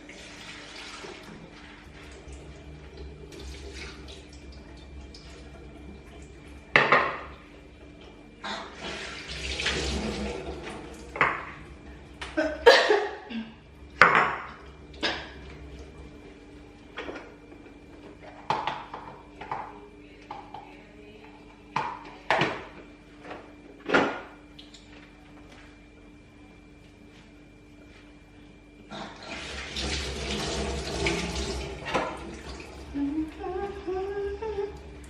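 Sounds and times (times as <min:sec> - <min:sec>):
tap water running: 0:00.0 - 0:13.0, 0:29.1 - 0:35.0.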